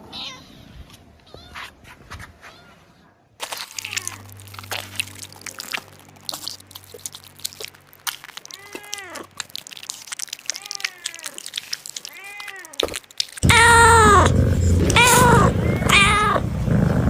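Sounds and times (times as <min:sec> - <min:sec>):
cat meowing: 0:00.0 - 0:00.7, 0:03.7 - 0:05.6, 0:08.2 - 0:16.5
crackling and clicking: 0:03.4 - 0:16.4.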